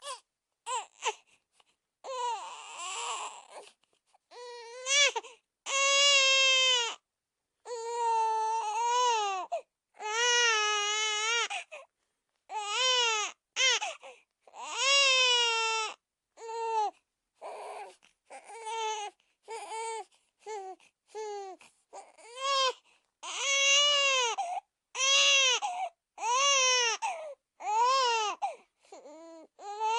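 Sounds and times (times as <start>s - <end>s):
toddler crying with high wailing sobs: 4.3s - 7.0s, 7.7s - 11.7s, 21.4s - 29.9s.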